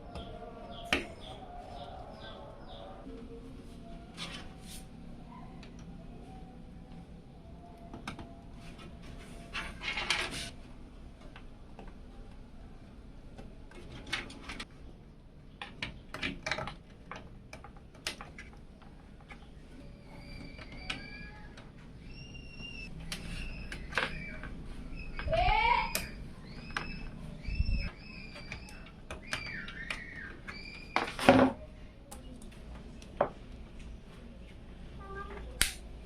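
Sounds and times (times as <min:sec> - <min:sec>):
birds chirping: 0:00.0 - 0:04.1, 0:19.3 - 0:31.2
computer parts clicking and knocking: 0:15.6 - 0:21.8, 0:27.8 - 0:31.6.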